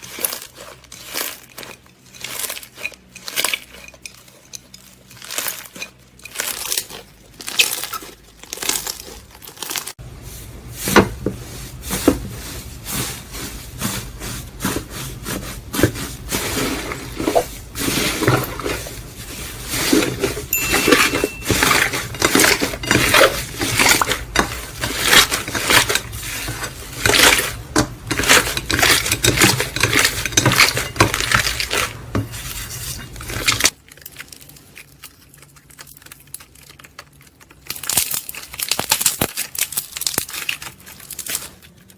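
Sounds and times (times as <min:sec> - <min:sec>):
low steady hum: 0:00.0 - 0:37.5
slime crackling and popping: 0:33.7 - 0:41.8.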